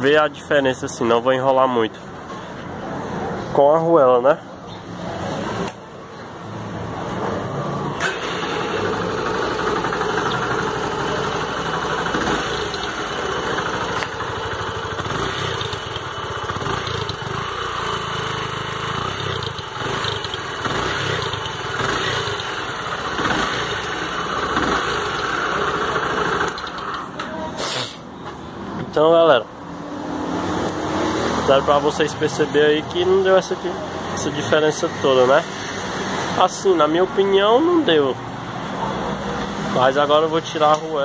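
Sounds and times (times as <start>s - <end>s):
motorcycle engine idling: 8.2s - 27.2s.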